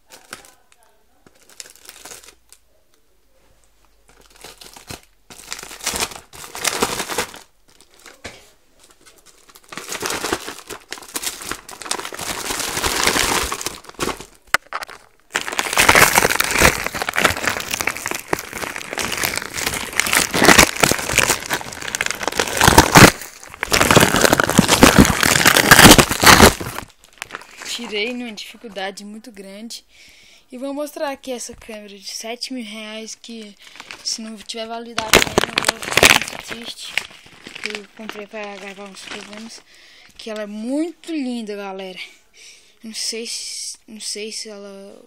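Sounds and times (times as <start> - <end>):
packaging crinkling and tearing: 0.0 - 2.6, 4.0 - 28.2, 33.3 - 40.5.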